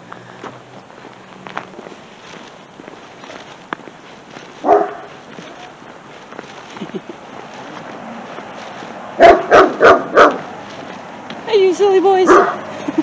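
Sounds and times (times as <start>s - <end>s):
dog barking: 4.6s - 5.2s, 9.2s - 10.5s, 12.2s - 12.6s.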